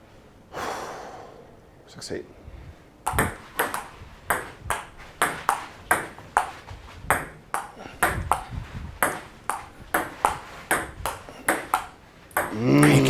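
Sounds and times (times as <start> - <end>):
table tennis ball clicking: 3.1 - 13.0.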